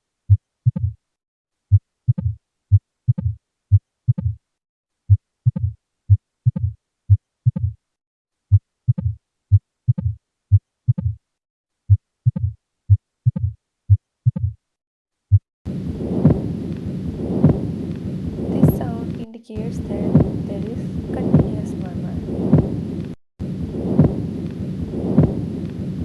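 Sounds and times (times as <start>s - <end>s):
heart murmur: 0.3s - 1.0s, 2.1s - 2.4s, 3.1s - 3.4s, 5.1s - 5.8s, 8.9s - 9.2s, 9.9s - 10.2s, 15.3s - 19.2s, 19.8s - 25.8s
heartbeat through a stethoscope: 0.3s - 1.0s, 1.7s - 4.4s, 5.1s - 7.8s, 8.5s - 11.2s, 11.9s - 14.6s, 15.3s - 26.0s
rumbling noise: 15.7s - 26.0s.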